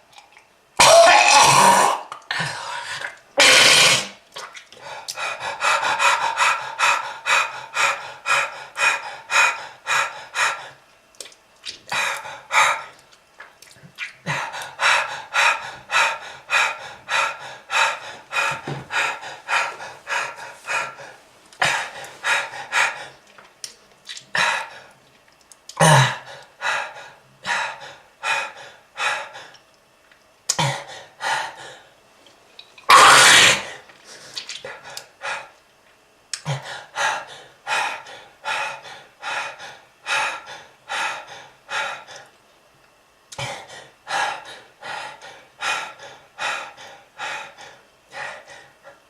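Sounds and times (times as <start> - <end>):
person hawking: 0.8 - 2.3, 32.9 - 33.7
person coughing: 0.8 - 2.4.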